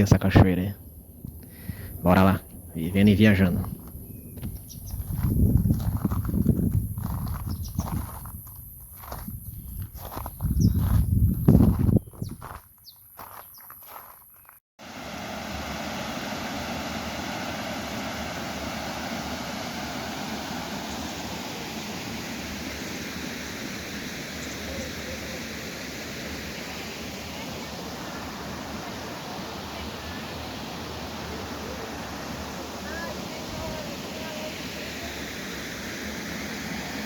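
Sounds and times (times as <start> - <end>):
waterfall rushing: 14.8 - 37.0.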